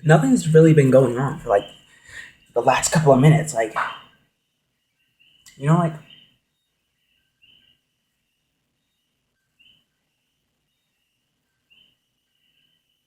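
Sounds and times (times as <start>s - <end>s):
faint steady high tone: 0.0s - 13.0s
faint high-pitched chirp: 4.8s - 13.0s.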